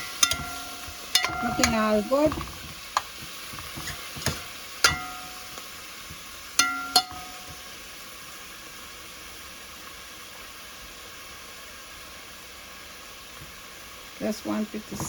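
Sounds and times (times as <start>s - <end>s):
metallic clinks against pot: 0.0s - 2.4s, 4.8s - 5.6s, 6.6s - 7.6s
spinach sizzling in a pot: 0.0s - 15.0s.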